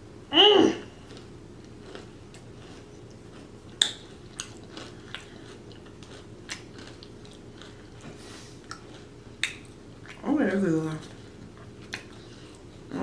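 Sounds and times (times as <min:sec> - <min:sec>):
chewing crunchy fried food: 0:00.9 - 0:13.0.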